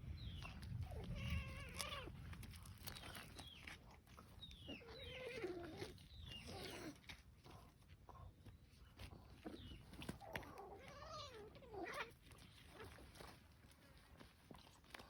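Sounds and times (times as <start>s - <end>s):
kittens mewing: 0.8s - 2.2s.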